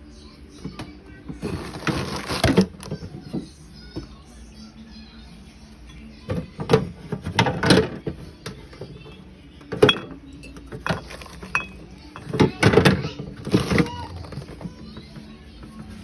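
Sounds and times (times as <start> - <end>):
bottles and cans knocking and clinking: 9.7 - 14.6.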